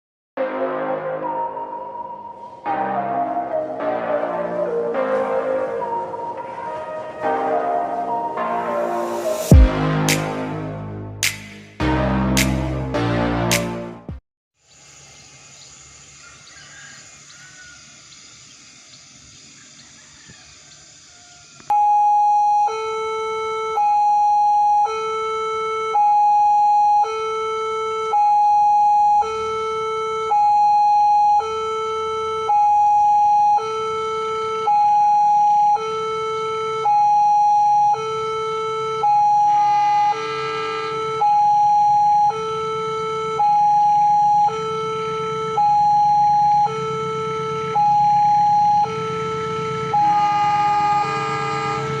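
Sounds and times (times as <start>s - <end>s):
two-tone electronic warning alarm: 1.2s - 10.3s, 21.7s - 52.0s.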